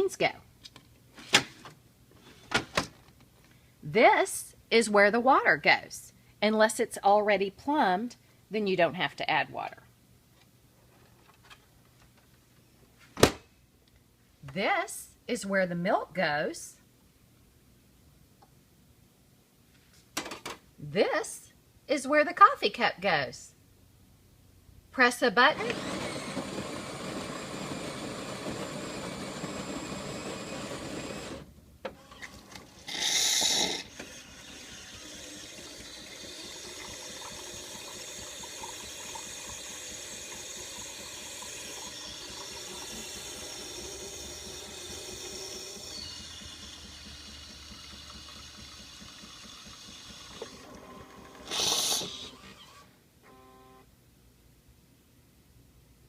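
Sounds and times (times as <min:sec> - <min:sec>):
coffee grinder running: 0:25.5 - 0:52.9
coffee machine pump running: 0:25.6 - 0:52.9
coffee pouring: 0:32.7 - 0:52.4
coffee machine steam hiss: 0:32.8 - 0:50.6, 0:51.4 - 0:52.5.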